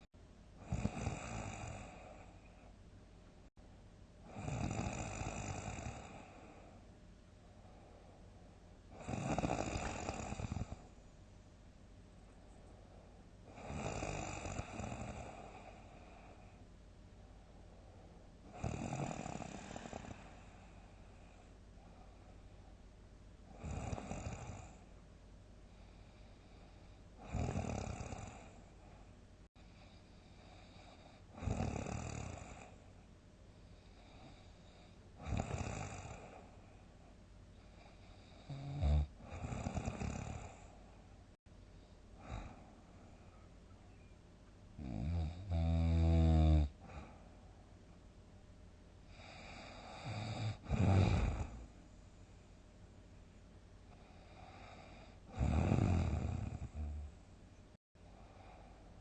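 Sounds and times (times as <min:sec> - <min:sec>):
person snoring loudly: 0:00.6 - 0:02.1, 0:04.3 - 0:06.4, 0:09.0 - 0:10.8, 0:13.5 - 0:15.7, 0:18.5 - 0:20.6, 0:23.5 - 0:24.8, 0:27.2 - 0:28.6, 0:31.3 - 0:32.7, 0:35.2 - 0:36.4, 0:38.4 - 0:40.7, 0:44.8 - 0:47.2, 0:49.2 - 0:51.7, 0:54.2 - 0:57.2.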